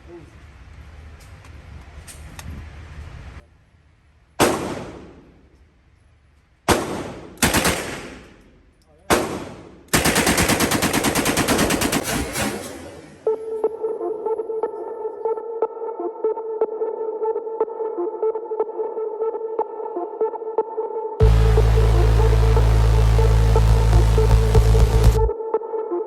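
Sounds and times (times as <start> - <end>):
submachine gun shots: 4.4 - 5.2, 6.7 - 8.4, 9.1 - 13.4
automatic gunfire burst: 6.7 - 8.4, 9.1 - 13.4.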